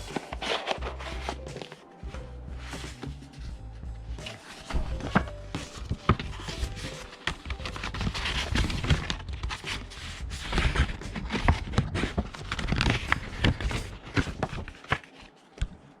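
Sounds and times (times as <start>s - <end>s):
packaging rustling with taps: 0.0s - 2.2s.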